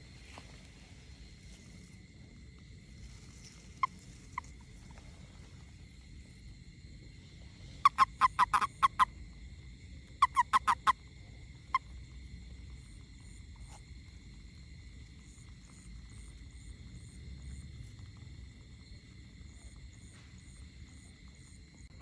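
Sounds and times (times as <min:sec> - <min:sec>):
high insect-like hum: 0:00.0 - 0:22.0
frog croaking: 0:02.9 - 0:06.5, 0:07.1 - 0:14.3.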